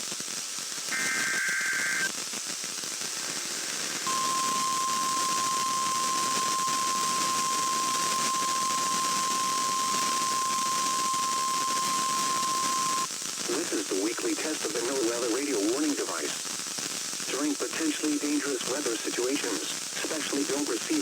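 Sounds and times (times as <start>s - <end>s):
radio static hiss: 0.0s - 21.0s
steady alarm tone: 4.1s - 13.1s.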